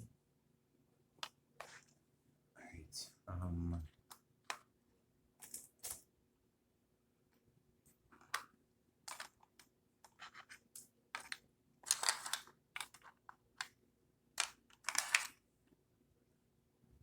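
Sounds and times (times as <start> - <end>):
plastic pieces rattling: 9.1 - 9.4, 11.2 - 13.2, 14.4 - 15.4
plastic pieces clacking: 9.1 - 13.7, 14.4 - 15.4.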